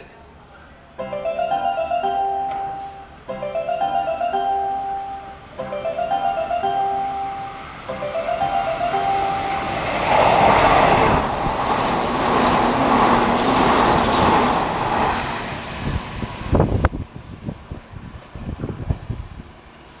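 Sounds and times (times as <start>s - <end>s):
train passing: 0.0s - 20.0s
short electronic tune: 1.0s - 10.3s.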